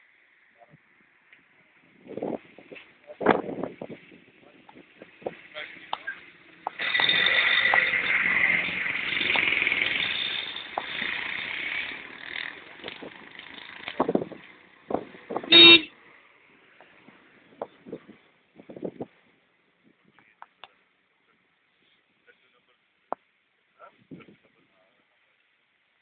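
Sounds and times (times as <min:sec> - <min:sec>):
motor vehicle running: 0:00.9 - 0:19.2
short loud horn toot: 0:15.5 - 0:15.9.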